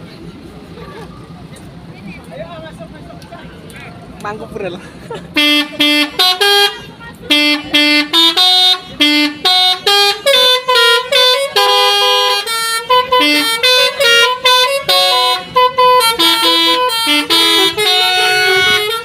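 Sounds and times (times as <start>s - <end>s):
bus horns playing a tune: 5.1s - 19.0s.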